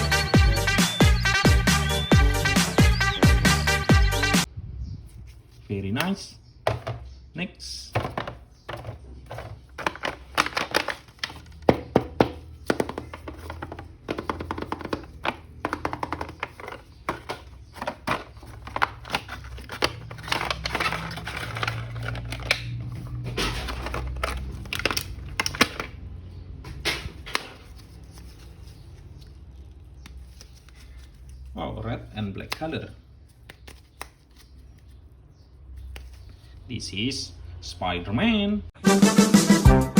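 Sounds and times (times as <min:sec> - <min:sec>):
toy packaging being opened: 0:08.2 - 0:11.8, 0:12.6 - 0:26.0.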